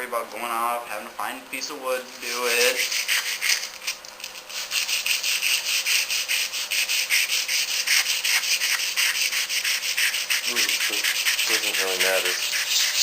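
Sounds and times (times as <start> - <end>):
sandpaper scrubbing metal tubing: 2.2 - 13.0.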